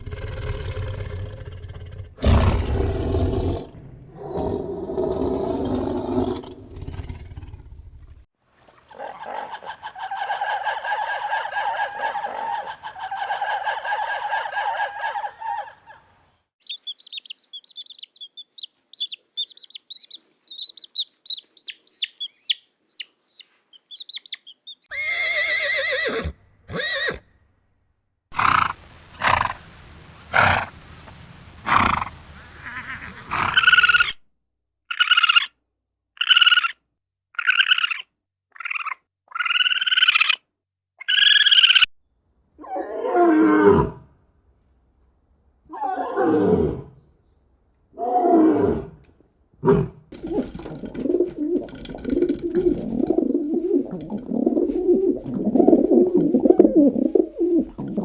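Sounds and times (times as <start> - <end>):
louder animal calls: 9.0 - 22.6, 31.7 - 34.2
long falling animal call: 9.1 - 16.1, 31.7 - 34.1, 50.2 - 58.0
high quick chirping: 16.6 - 24.9.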